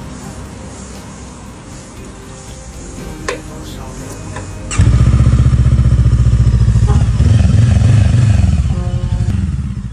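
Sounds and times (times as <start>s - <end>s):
small motorcycle engine running: 4.7s - 9.9s.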